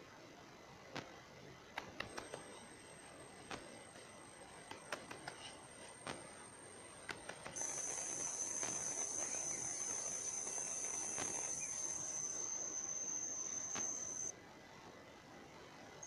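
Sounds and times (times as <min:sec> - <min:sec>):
insect trill: 0:05.7 - 0:14.3
faint clicks: 0:13.6 - 0:14.3.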